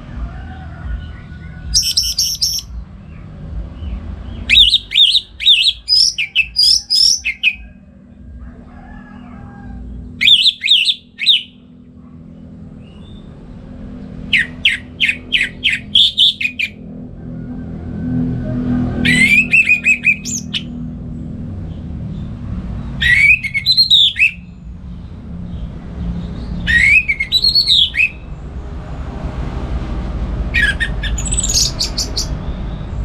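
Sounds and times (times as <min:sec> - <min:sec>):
thrush whistled song: 0:01.7 - 0:02.7, 0:04.4 - 0:07.6, 0:10.2 - 0:11.6, 0:14.3 - 0:16.8, 0:19.0 - 0:20.7, 0:23.0 - 0:24.4, 0:26.6 - 0:28.2, 0:30.6 - 0:32.4.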